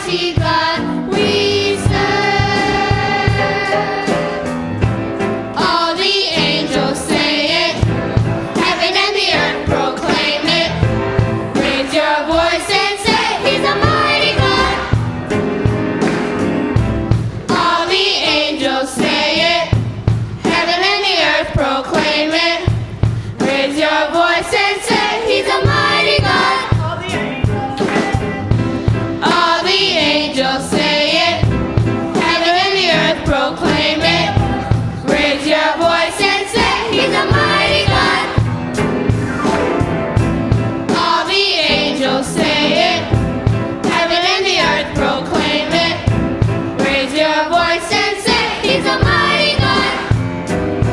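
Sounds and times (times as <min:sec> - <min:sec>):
band with steady beat: 0:00.0 - 0:12.1, 0:13.7 - 0:17.9, 0:25.6 - 0:35.2, 0:36.5 - 0:47.5
voices singing gospel: 0:00.0 - 0:16.5, 0:17.4 - 0:50.9.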